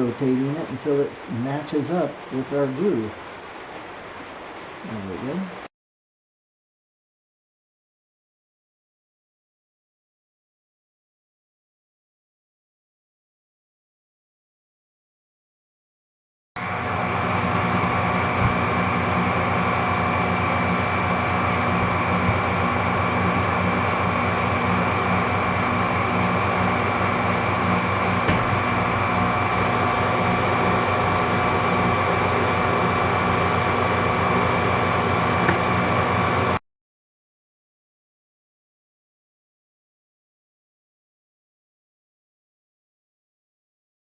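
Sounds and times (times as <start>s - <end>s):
metal lathe whining: 16.6s - 36.6s.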